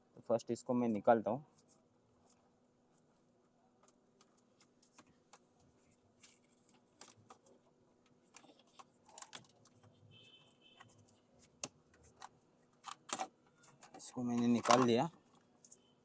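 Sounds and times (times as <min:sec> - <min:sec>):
plastic and metal clicks: 0:12.2 - 0:15.1.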